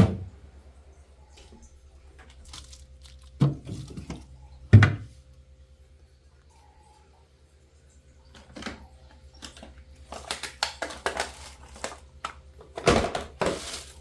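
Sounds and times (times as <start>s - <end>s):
plastic containers knocking and clattering: 0.0s - 0.4s, 2.1s - 5.1s, 8.3s - 14.0s.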